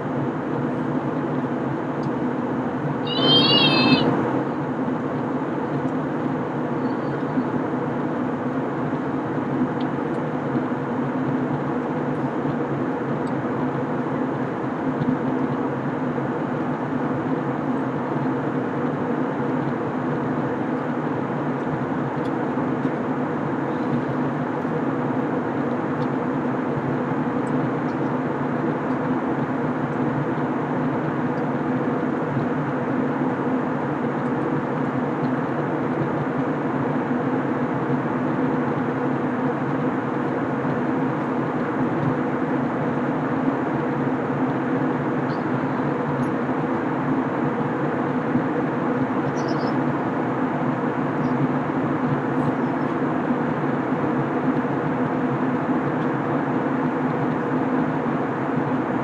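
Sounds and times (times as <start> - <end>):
aircraft cabin engine drone: 0.0 - 59.0.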